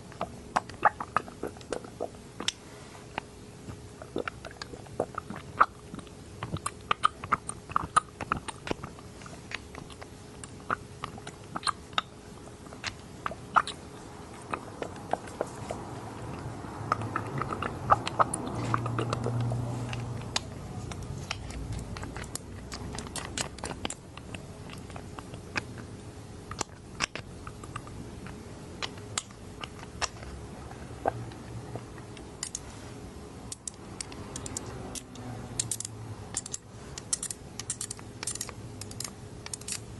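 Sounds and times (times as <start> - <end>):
wet squishing of dropper: 0.1 - 25.8.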